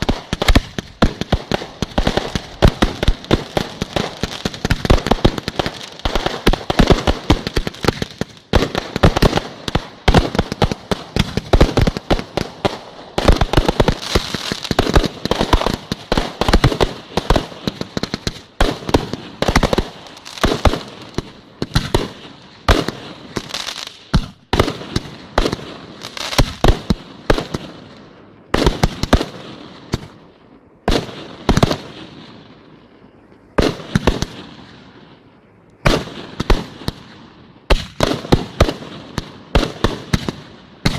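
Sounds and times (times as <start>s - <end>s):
fireworks crackling: 0.0s - 40.9s.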